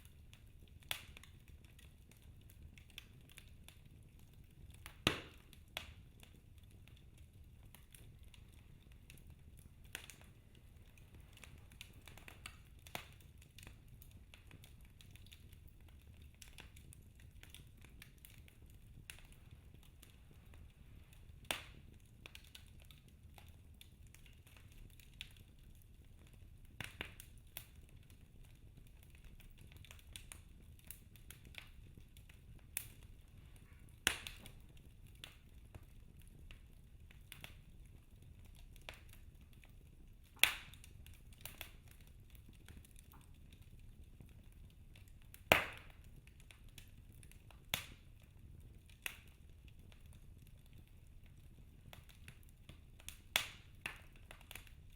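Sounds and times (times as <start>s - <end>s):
fire pops: 0.0s - 54.9s
wood fire crackling: 0.0s - 54.9s.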